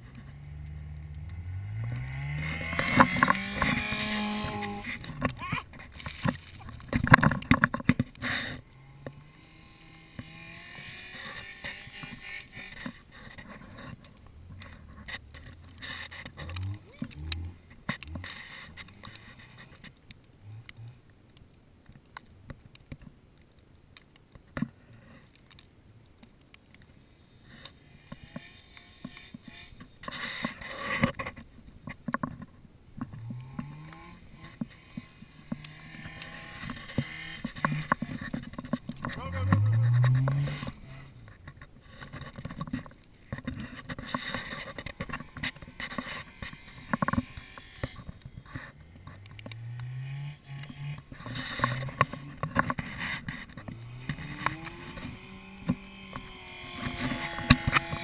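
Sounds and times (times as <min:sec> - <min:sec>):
vehicle engine revving: 0:00.0 - 0:07.6, 0:08.2 - 0:19.5, 0:33.2 - 0:41.6, 0:44.4 - 0:58.0.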